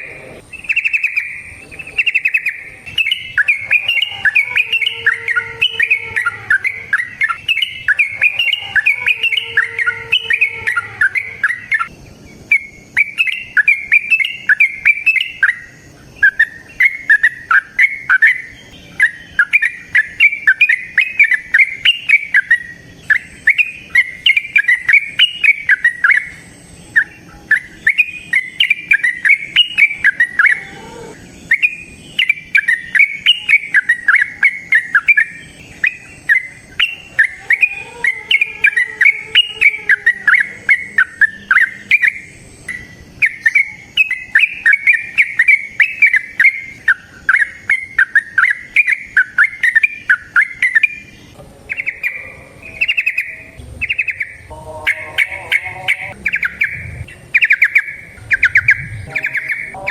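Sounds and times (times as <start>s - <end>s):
bulbul singing chirping notes: 0.0s - 59.9s.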